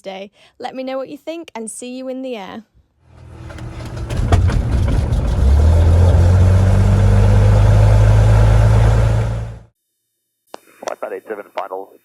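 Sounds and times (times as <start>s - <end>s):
propeller engine drone: 3.2s - 9.7s.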